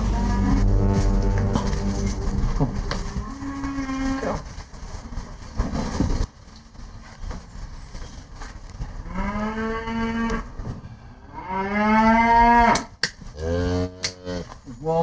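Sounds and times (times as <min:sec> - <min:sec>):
cattle mooing: 0:00.0 - 0:04.2.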